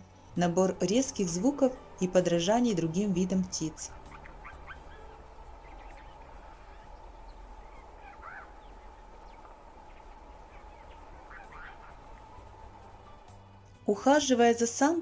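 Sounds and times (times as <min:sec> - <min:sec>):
faint steady hum: 0:00.0 - 0:14.2
jay calling: 0:00.9 - 0:13.3.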